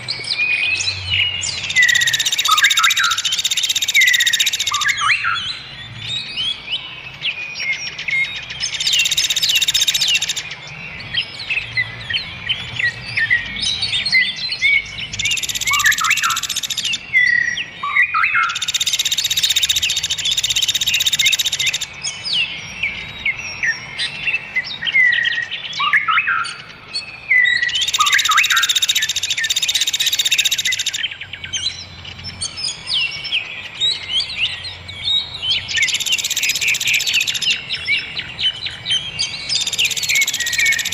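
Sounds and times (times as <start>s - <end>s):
songbirds chirping chorus: 0.0s - 40.9s
fast high bird trilling: 1.5s - 5.3s, 15.2s - 17.0s, 27.7s - 31.2s, 39.3s - 40.9s.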